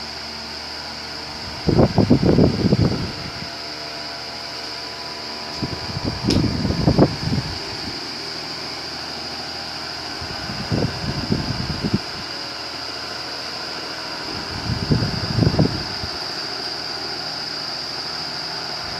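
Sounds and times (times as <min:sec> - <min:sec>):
electric fan whirring: 0:00.0 - 0:18.9.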